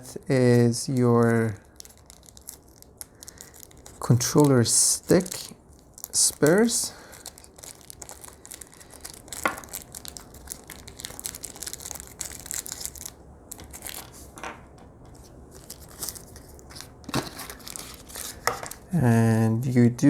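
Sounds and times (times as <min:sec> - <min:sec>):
packaging crinkling and rustling: 0:00.0 - 0:18.9.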